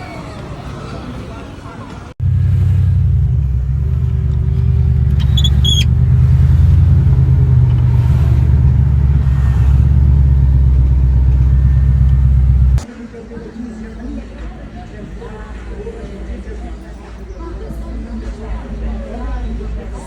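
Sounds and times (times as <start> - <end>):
deep engine exhaust rumble: 2.2 - 12.9.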